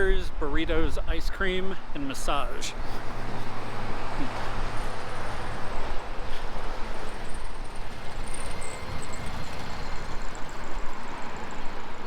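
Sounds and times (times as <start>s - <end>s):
car road and engine noise: 0.0s - 12.0s.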